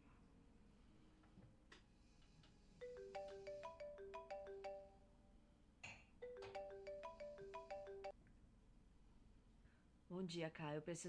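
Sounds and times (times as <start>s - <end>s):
marimba ringtone melody: 2.8s - 5.2s, 6.2s - 8.2s.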